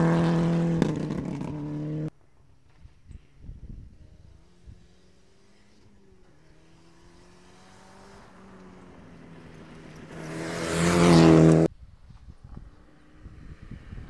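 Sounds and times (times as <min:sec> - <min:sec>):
rally car engine at full throttle: 0:00.0 - 0:02.1, 0:04.0 - 0:11.7.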